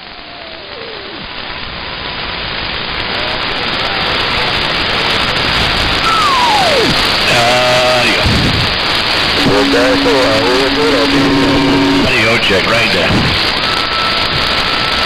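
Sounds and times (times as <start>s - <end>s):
radio static hiss: 0.0s - 15.0s
whistle gliding down in pitch: 6.1s - 7.0s, 9.4s - 12.1s
garbled voice over radio: 6.2s - 8.7s, 9.4s - 13.5s.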